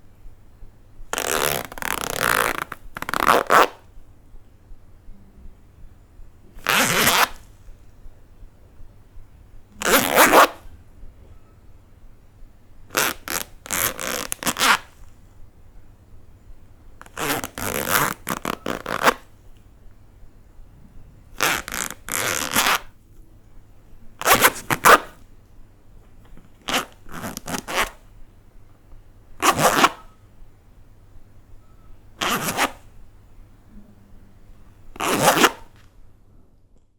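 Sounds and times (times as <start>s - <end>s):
zipper being zipped: 1.1s - 3.8s, 6.6s - 7.4s, 9.8s - 10.6s, 12.9s - 15.0s, 17.0s - 19.3s, 21.4s - 22.9s, 24.2s - 25.2s, 26.6s - 28.0s, 29.4s - 30.1s, 32.2s - 32.9s, 35.0s - 35.7s.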